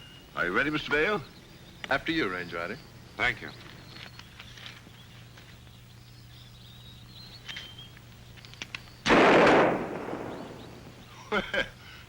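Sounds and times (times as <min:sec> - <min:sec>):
faint clicks: 0:07.4 - 0:09.0
pistol shot with echo: 0:09.1 - 0:10.9.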